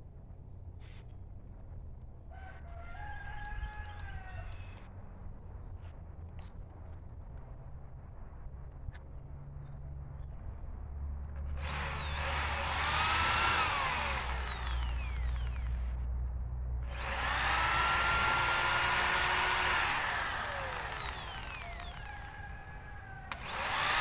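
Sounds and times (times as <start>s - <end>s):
power drill driving screws into wood: 11.6s - 16.0s, 16.9s - 24.0s.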